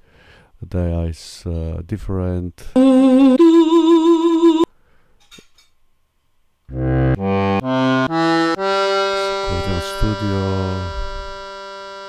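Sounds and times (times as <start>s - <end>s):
held keyboard note with vibrato: 6.7s - 12.0s
short keyboard notes: 6.7s - 12.0s.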